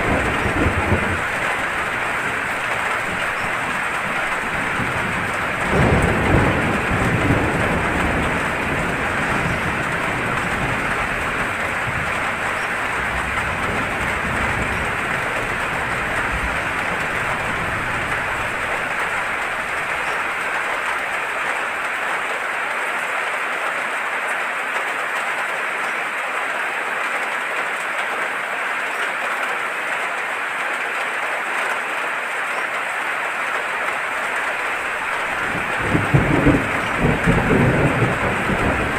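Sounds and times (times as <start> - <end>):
thunder rumbling: 0.0 - 21.5, 34.6 - 38.9
heavy rain falling: 0.0 - 38.9.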